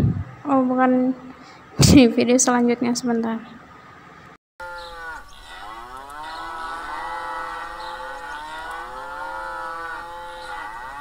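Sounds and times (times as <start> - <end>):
cow mooing sound effect: 4.6 - 11.0.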